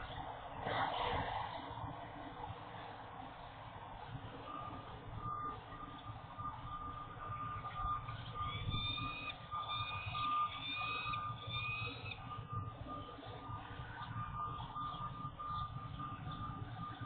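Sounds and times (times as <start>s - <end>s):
city traffic rumble: 0.0s - 17.0s
reversing alarm beeping: 4.1s - 17.0s
rising whistled tones: 4.5s - 17.0s.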